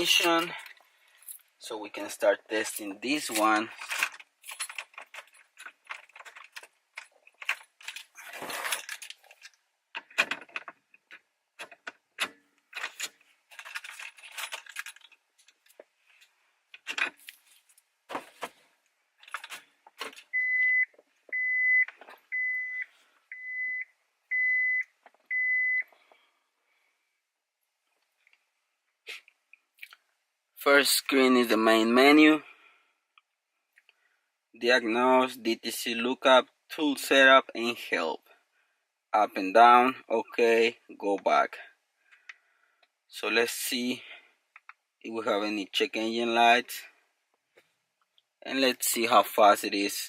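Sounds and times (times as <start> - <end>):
car keys jangling: 2.7 - 11.0, 11.6 - 15.6
car warning chime beeps: 20.3 - 25.9.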